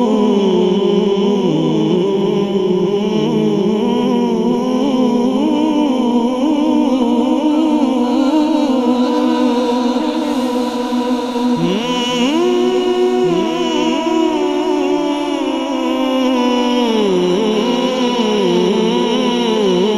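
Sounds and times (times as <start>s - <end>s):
voices holding a drone: 7.4s - 16.0s.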